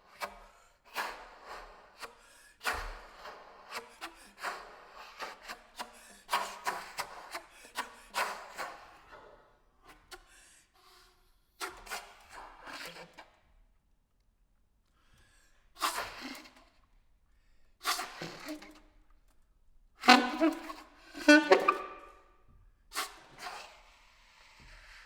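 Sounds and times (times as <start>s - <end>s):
saxophone rasping air noise: 20.0s - 22.1s.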